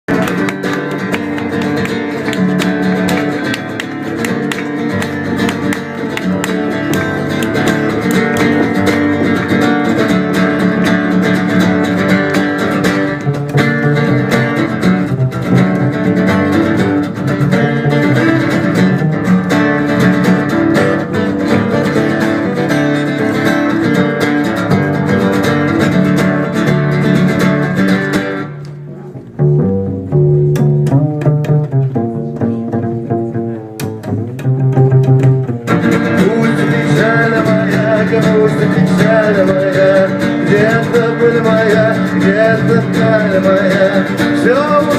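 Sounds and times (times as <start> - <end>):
acoustic guitar strumming: 0.1 - 44.9.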